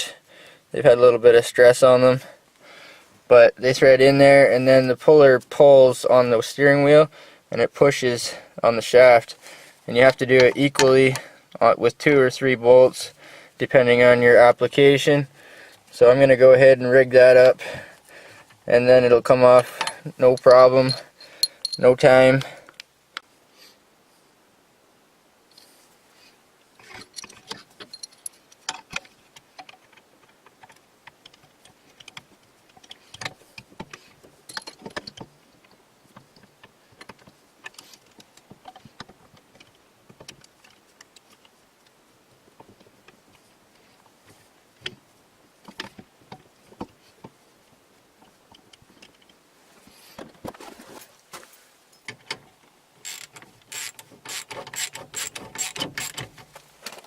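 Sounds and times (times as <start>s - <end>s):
metal tools clicking and clinking: 19.7s - 21.9s, 26.8s - 28.9s, 34.5s - 35.2s, 53.0s - 56.3s.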